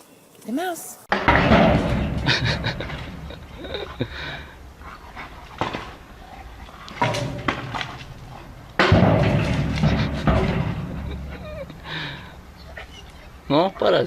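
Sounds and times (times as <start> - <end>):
dog whimpering: 12.6 - 14.0.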